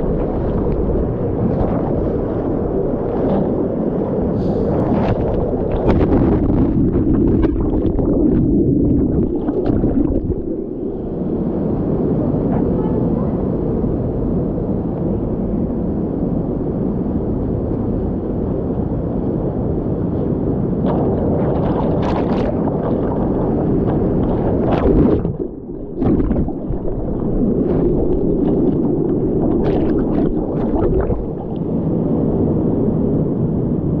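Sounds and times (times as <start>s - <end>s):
rushing splashing water: 0.0s - 11.1s, 20.8s - 32.5s.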